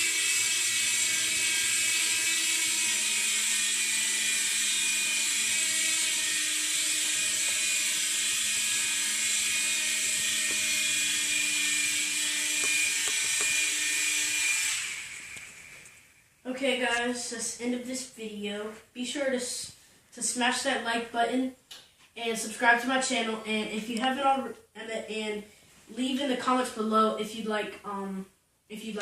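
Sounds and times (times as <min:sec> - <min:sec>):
toy helicopter motor whirring: 0:00.0 - 0:16.2.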